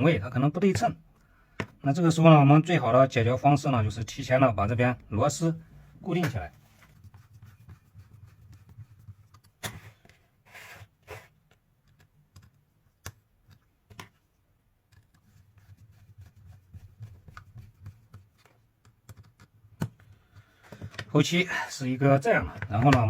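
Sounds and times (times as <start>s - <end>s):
hands clicking plastic parts: 11.4s - 14.2s, 14.8s - 15.3s, 17.2s - 21.2s, 22.5s - 23.0s.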